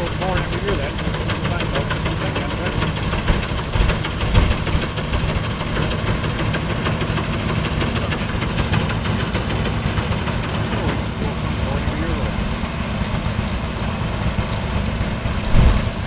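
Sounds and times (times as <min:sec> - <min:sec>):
combine harvester running: 0:00.0 - 0:16.0
loud bump: 0:15.4 - 0:16.0.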